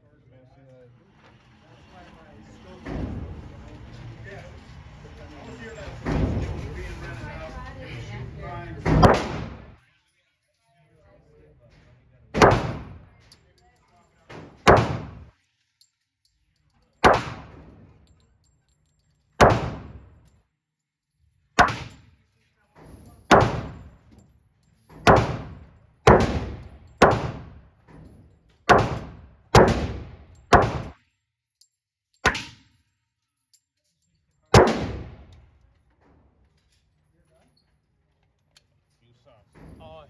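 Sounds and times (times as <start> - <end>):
pistol shots: 8.9 - 9.8, 12.4 - 13.2, 14.5 - 15.3, 17.0 - 17.8, 19.4 - 20.1, 21.6 - 22.1, 23.3 - 24.0, 25.0 - 27.6, 28.7 - 31.0, 32.2 - 32.6, 34.6 - 35.4.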